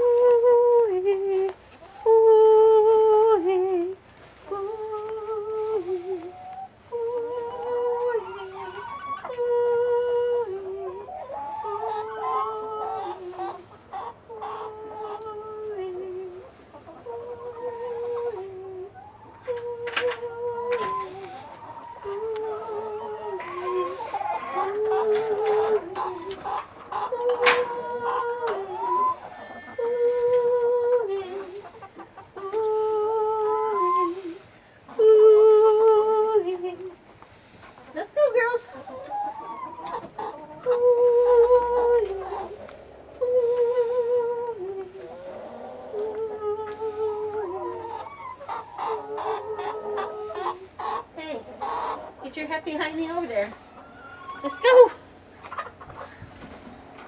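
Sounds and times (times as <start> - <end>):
woman singing wordless notes: 0.0 - 13.6, 14.6 - 21.3, 22.0 - 26.4, 27.0 - 31.7, 32.4 - 37.0, 40.5 - 42.6, 43.2 - 45.2
hens clucking: 0.0 - 57.0.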